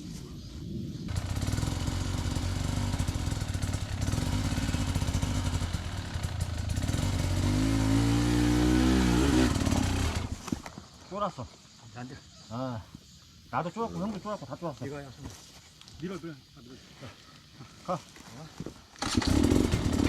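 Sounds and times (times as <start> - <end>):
dirt bike engine revving: 1.1 - 10.4, 19.0 - 20.0.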